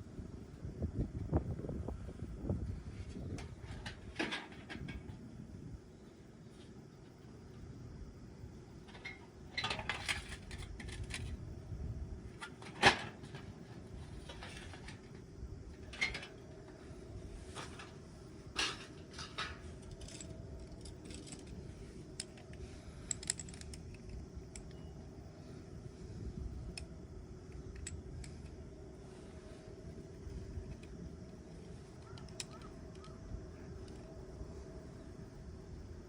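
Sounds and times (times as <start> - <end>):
metal parts clinking: 18.6 - 24.8.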